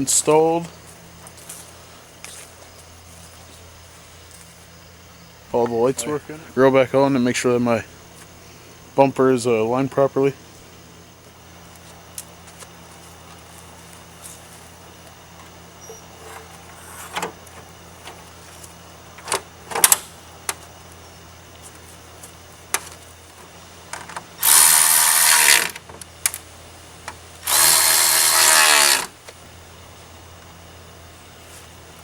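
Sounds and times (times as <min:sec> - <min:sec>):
power tool whine: 0:24.4 - 0:25.8, 0:27.4 - 0:29.2.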